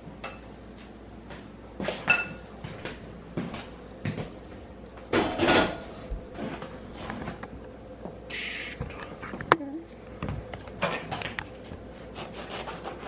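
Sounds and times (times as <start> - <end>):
dishes clattering: 1.8 - 2.4, 5.1 - 5.9, 10.8 - 11.4
dishes knocking and clinking: 1.8 - 2.4, 5.1 - 5.9, 10.8 - 11.4.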